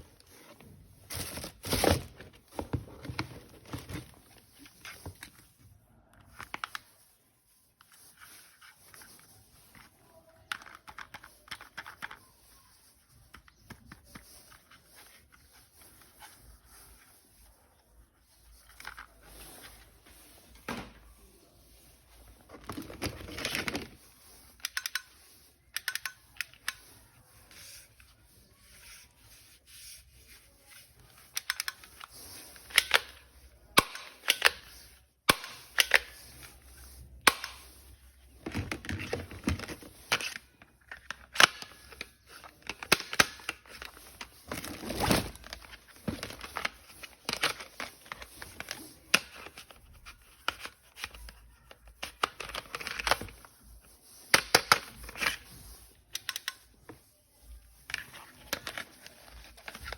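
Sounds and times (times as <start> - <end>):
packaging rustling: 0.0 - 5.4, 37.9 - 53.7
plastic parts clicking and snapping: 24.6 - 26.9, 31.2 - 33.2, 33.8 - 36.2, 37.2 - 37.7, 38.4 - 51.4, 56.1 - 57.0.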